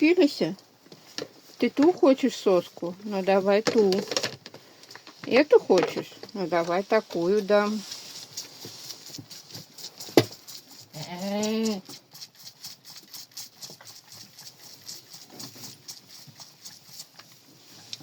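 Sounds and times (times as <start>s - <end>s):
goat kid bleating: 10.9s - 11.9s.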